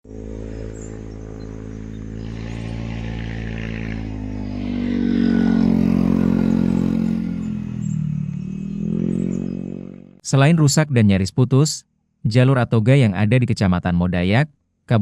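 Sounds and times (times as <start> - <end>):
vehicle engine running: 0.0 - 10.2.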